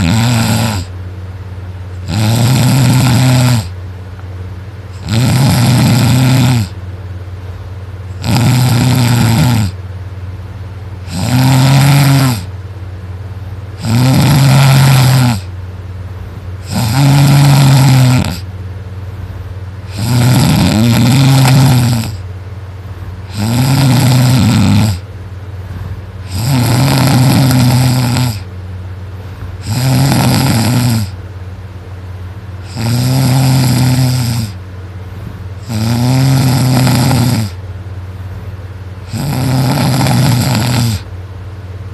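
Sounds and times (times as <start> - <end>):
person snoring loudly: 0.0 - 0.9, 2.0 - 3.8, 5.0 - 6.8, 8.1 - 9.8, 11.0 - 12.5, 13.8 - 15.5, 16.6 - 18.5, 19.8 - 22.2, 23.3 - 25.0, 26.2 - 28.5, 29.6 - 31.2, 32.6 - 34.6, 35.6 - 37.6, 39.0 - 41.1.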